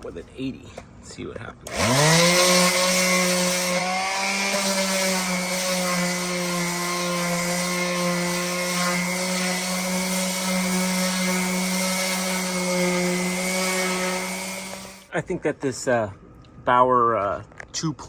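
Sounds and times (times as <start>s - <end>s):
palm sander motor hum: 1.7s - 15.1s
sandpaper hissing on surface: 2.3s - 15.1s.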